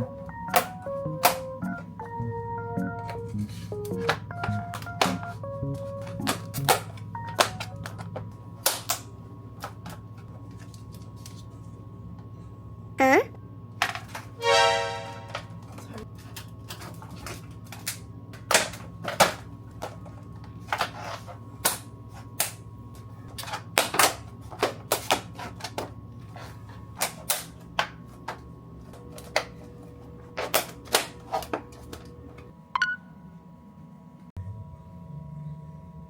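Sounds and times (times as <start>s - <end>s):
steady low hum: 0.0s - 13.8s.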